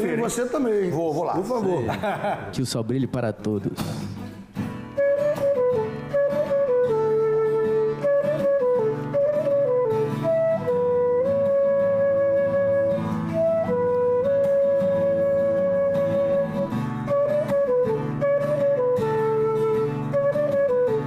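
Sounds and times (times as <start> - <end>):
guitar accompaniment: 2.0 - 21.0
flute melody: 4.7 - 21.0.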